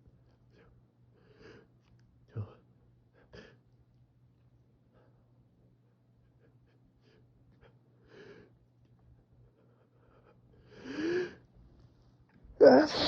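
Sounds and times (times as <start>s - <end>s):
person breathing quietly: 9.5s - 11.5s.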